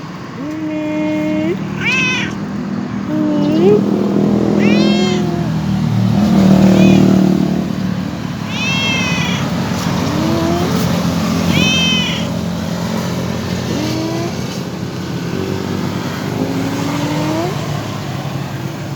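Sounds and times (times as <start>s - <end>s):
steady traffic noise: 0.0s - 18.9s
cat meowing: 0.4s - 7.4s, 8.2s - 12.6s, 13.7s - 14.6s, 16.4s - 17.7s.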